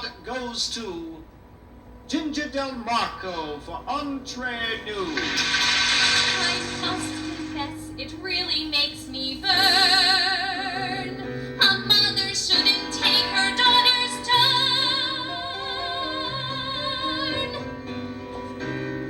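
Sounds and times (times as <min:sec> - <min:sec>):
musical accompaniment: 0:04.8 - 0:19.0
woman singing with operatic vibrato: 0:06.4 - 0:17.6.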